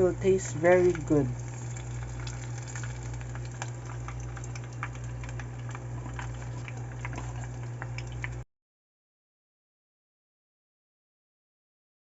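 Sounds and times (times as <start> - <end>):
deep-frying oil sizzling: 0.0 - 8.4.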